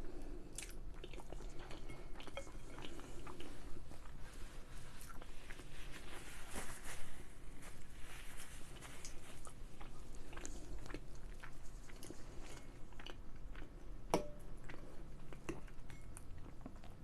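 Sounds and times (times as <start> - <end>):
close-up chewing: 0.0 - 6.4, 7.5 - 17.0.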